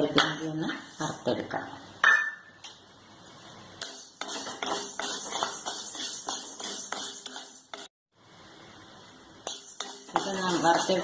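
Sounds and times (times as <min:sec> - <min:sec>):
spatula scraping a pan: 0:03.8 - 0:07.9, 0:09.5 - 0:11.0.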